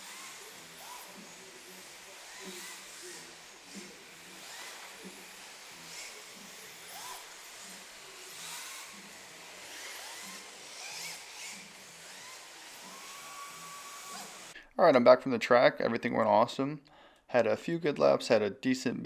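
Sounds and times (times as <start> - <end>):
electric motors whining: 0.0 - 14.6.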